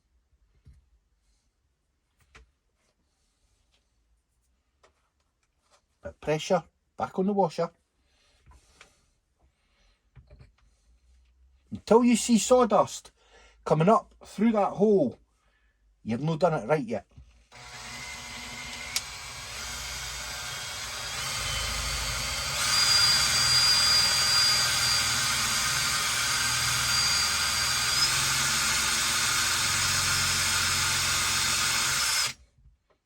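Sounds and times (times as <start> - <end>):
electric drill boring into wood: 17.5 - 32.4.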